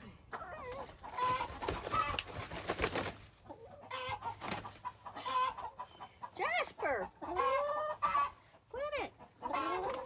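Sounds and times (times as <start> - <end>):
hens clucking: 0.0 - 10.0
rustling and knocks from handled birds: 0.8 - 3.6.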